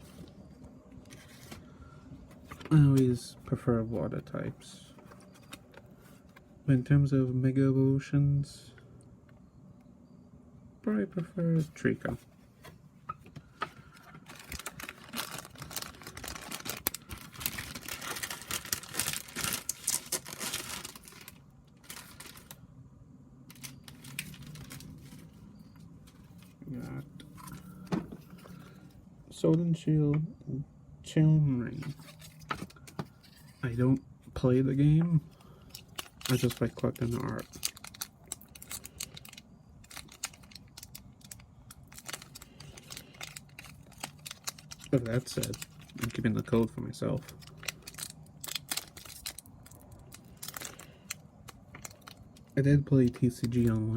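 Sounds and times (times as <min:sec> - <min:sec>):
packaging crinkling and rustling: 0:11.7 - 0:22.6, 0:23.5 - 0:28.9, 0:31.7 - 0:33.8, 0:34.4 - 0:53.9
trading cards being handled: 0:23.5 - 0:28.9, 0:31.7 - 0:49.6.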